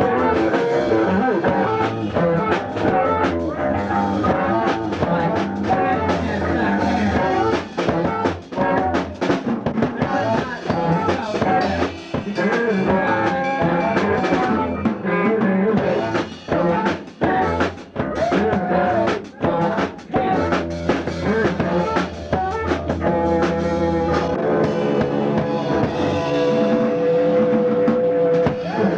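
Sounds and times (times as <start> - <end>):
guitar: 0.0 - 28.9
low bass line: 9.9 - 28.9
drum kit hits: 15.8 - 28.8.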